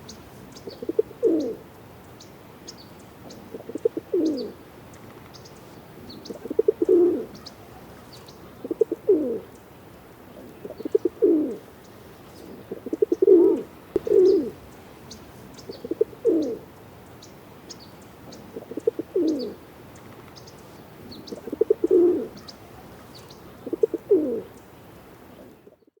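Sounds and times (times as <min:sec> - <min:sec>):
small birds chirping: 0:00.0 - 0:26.0
pigeon cooing: 0:00.6 - 0:01.7, 0:03.3 - 0:04.6, 0:06.0 - 0:09.5, 0:10.3 - 0:11.7, 0:12.4 - 0:14.6, 0:15.7 - 0:16.7, 0:18.3 - 0:19.6, 0:21.0 - 0:24.5.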